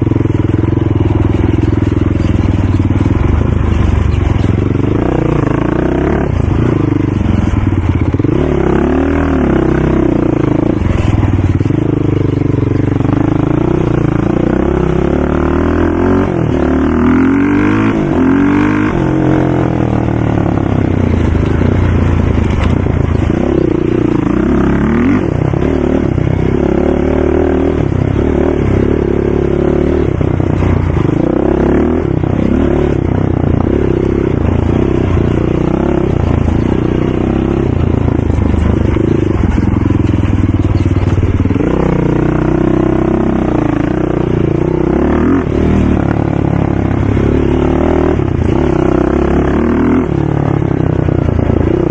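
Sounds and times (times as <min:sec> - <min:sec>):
engines revving: 0:13.0 - 0:51.9.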